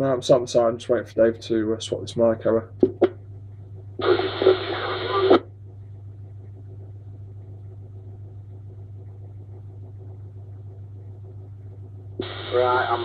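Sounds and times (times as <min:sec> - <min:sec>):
steady low hum: 0:00.0 - 0:13.0
radio static hiss: 0:04.0 - 0:05.5, 0:12.2 - 0:13.0.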